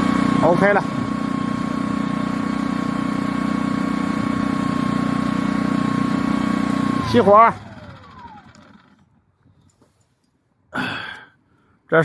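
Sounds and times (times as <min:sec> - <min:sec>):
petrol generator running: 0:00.0 - 0:09.2.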